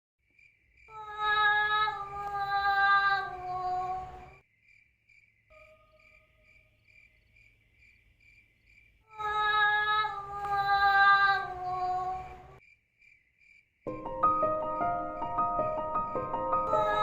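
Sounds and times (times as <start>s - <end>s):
crickets chirping: 0.2s - 17.0s
drawn-out wailing voice: 9.2s - 12.6s.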